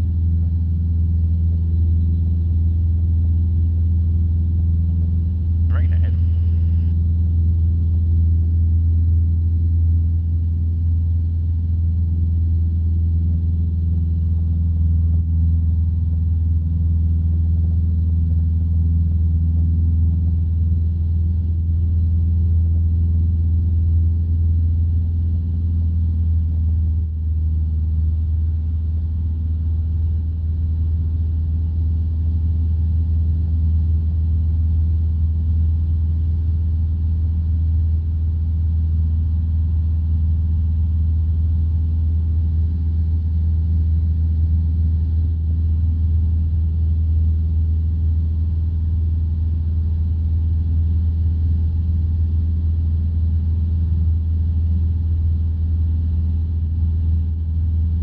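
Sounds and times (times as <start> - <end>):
aircraft engine droning in cockpit: 0.0 - 58.0.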